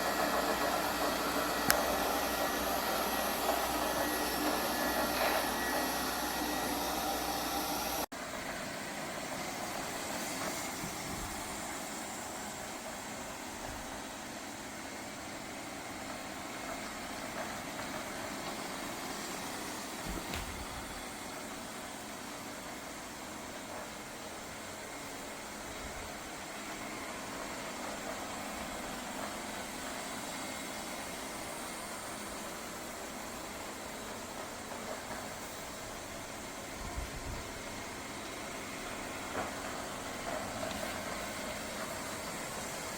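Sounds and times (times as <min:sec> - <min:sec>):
robot vacuum whirring: 0:00.0 - 0:08.1
robot vacuum running: 0:00.0 - 0:42.9.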